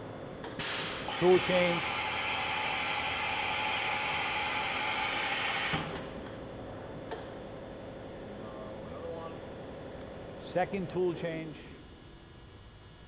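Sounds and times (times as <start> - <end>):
air hissing: 0.6 - 6.1.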